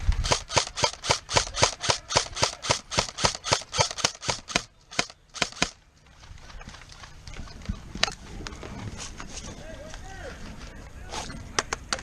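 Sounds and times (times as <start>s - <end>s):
airsoft gun shots: 0.2s - 5.8s.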